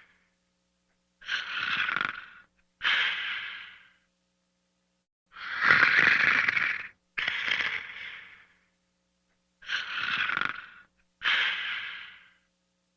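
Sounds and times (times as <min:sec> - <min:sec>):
person snoring: 0:01.2 - 0:04.1, 0:05.3 - 0:08.7, 0:09.6 - 0:12.5.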